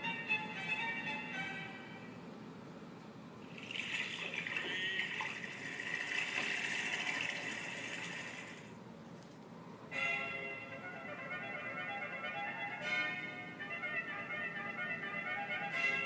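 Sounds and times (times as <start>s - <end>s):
splashing trickling water effect: 3.4s - 8.7s.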